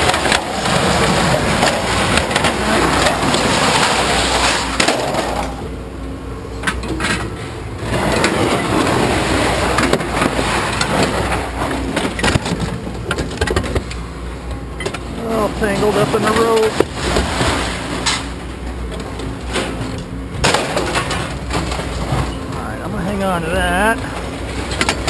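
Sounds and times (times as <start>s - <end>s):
scrap metal clattering: 0.0s - 5.6s, 14.8s - 22.7s.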